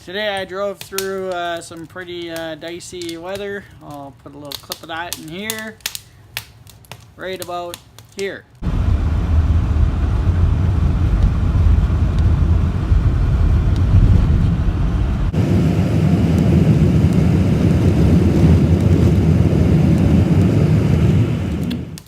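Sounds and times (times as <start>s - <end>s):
car engine rumble: 8.6s - 22.0s
road noise: 8.6s - 22.0s.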